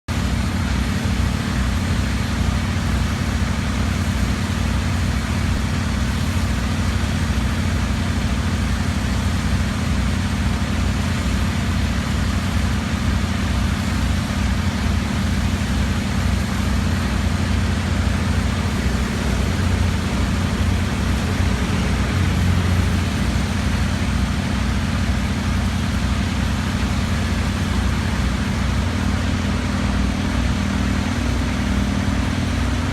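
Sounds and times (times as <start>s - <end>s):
heavy equipment engine droning: 0.1s - 32.9s.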